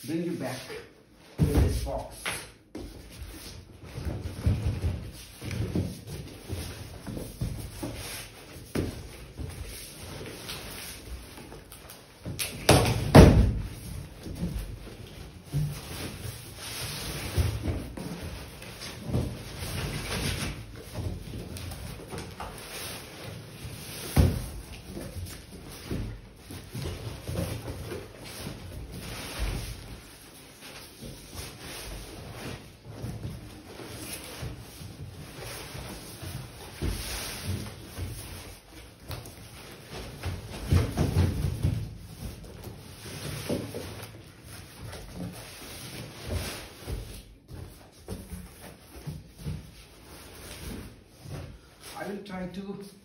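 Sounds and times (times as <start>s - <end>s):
cardboard thuds: 12.6s - 14.8s
cardboard scraping and rustling: 13.2s - 51.9s.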